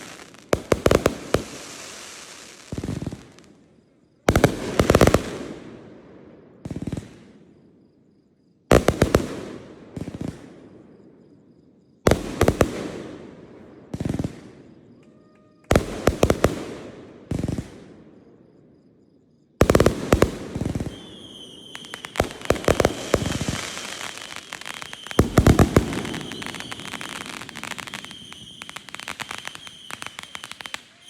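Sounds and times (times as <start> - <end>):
dense firework crackling: 0.0 - 3.5, 19.7 - 31.0
firework shells bursting: 19.8 - 31.0
high whistle: 20.8 - 22.2, 23.2 - 25.4, 26.0 - 31.0.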